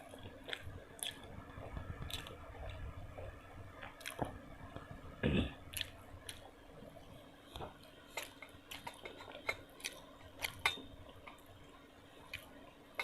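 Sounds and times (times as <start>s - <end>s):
chewing and wet mouth sounds: 0.0s - 4.9s, 5.6s - 13.0s.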